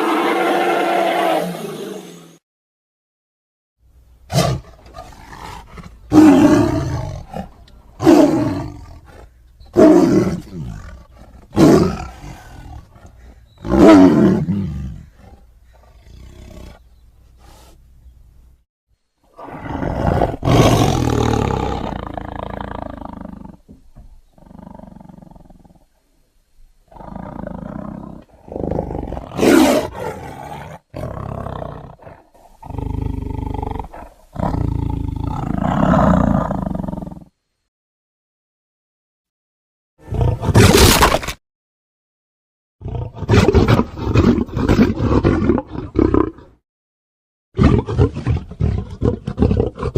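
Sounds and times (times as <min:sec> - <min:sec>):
sea monster roars: 0:00.0 - 0:02.3.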